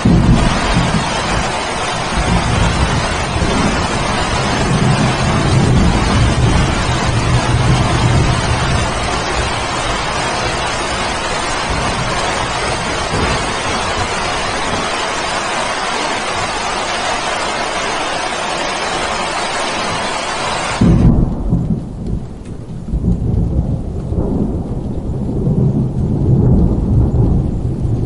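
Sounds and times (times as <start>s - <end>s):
distant thunder rumble: 0.0s - 28.0s
heavy rain: 0.0s - 28.0s.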